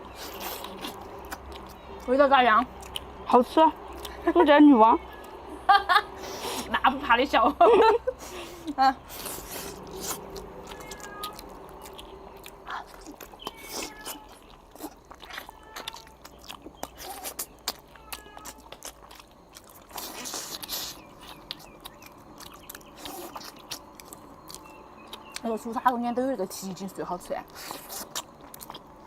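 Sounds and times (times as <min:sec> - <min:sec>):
person biting and chewing: 0:00.0 - 0:01.8, 0:09.1 - 0:25.4, 0:27.5 - 0:29.0.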